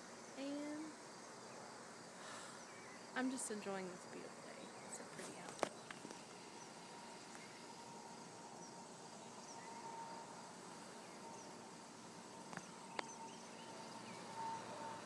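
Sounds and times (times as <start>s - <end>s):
faint steady hum: 0.0s - 15.0s
bird chirps: 12.5s - 15.0s.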